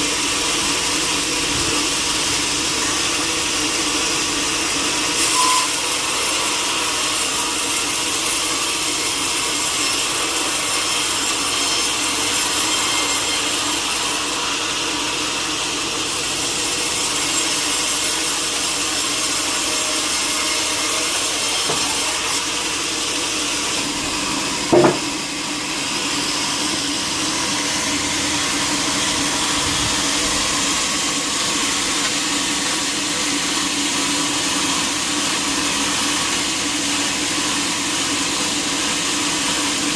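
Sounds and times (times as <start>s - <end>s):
saw cutting through timber: 0.0s - 39.9s
sharp knock: 24.7s - 25.2s.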